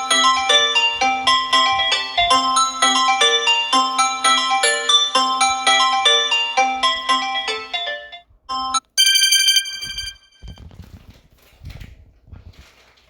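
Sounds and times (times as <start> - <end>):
marimba ringtone melody: 0.0 - 10.4
bell-like ringtone: 0.0 - 10.6.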